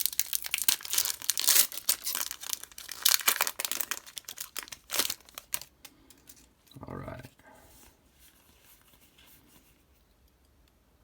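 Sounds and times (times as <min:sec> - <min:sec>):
foil wrapper crinkling and tearing: 0:00.0 - 0:06.5.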